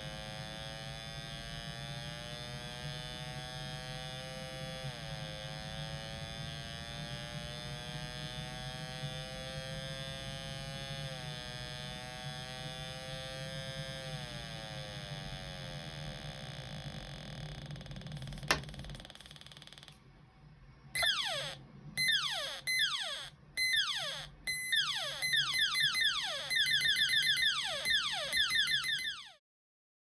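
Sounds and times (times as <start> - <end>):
buzzy electronic tone: 21.0 - 29.4
falling-pitch electronic sweeps: 21.0 - 29.4.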